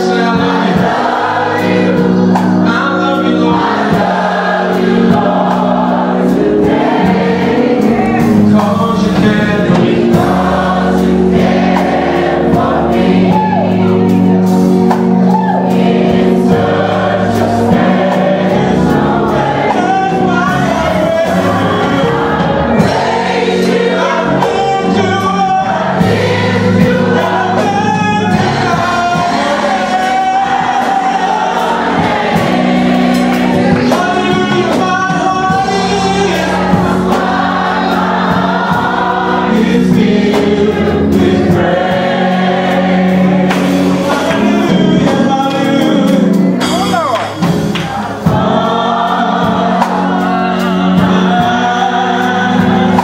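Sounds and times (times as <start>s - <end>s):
choir and congregation singing: 0.0s - 53.0s
instrumental backing: 0.0s - 53.0s.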